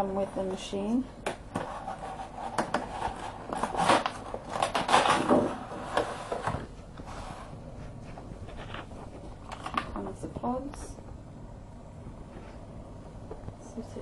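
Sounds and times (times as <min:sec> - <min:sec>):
packaging rustling with small clicks: 0:08.5 - 0:10.0.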